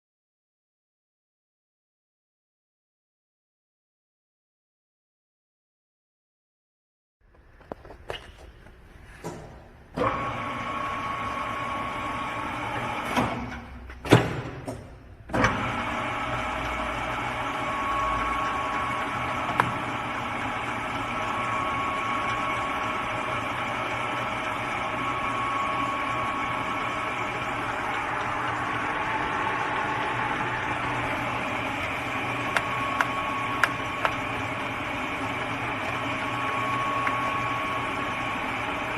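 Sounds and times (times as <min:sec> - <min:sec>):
lathe running: 0:10.0 - 0:13.3, 0:15.4 - 0:38.9.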